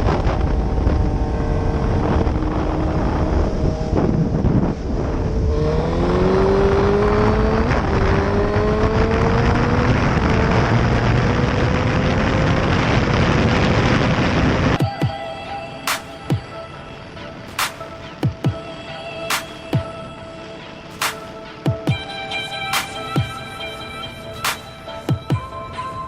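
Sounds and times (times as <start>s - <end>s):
motorcycle engine accelerating: 0.0s - 14.9s
wind rush on microphone: 0.0s - 26.0s.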